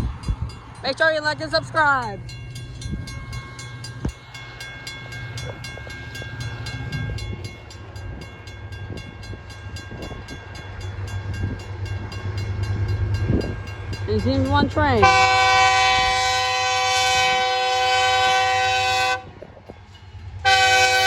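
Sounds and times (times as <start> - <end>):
locomotive engine rumble: 0.0 - 21.0
rapid steady ringing: 0.4 - 14.6
train horn: 14.9 - 19.4, 20.4 - 21.0.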